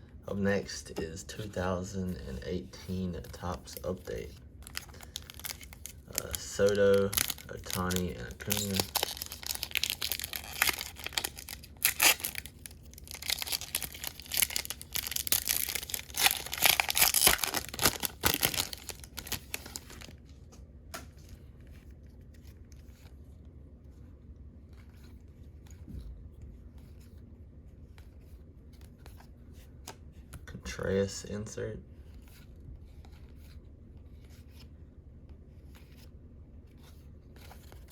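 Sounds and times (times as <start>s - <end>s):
foil wrapper tearing and crinkling: 4.6s - 20.1s.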